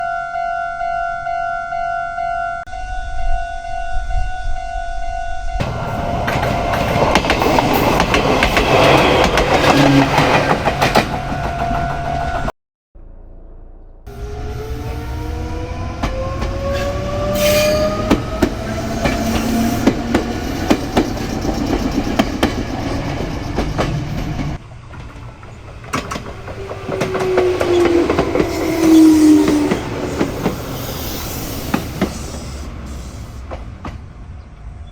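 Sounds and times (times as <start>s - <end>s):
train rumble: 2.9s - 12.5s, 14.1s - 34.9s
wheels clicking over rail joints: 17.8s - 31.0s
electric train motor whine: 24.7s - 33.2s.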